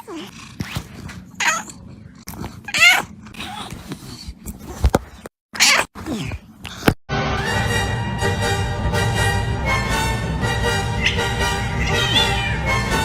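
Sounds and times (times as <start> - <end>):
music: 7.1 - 13.0
cat meowing: 11.0 - 12.9.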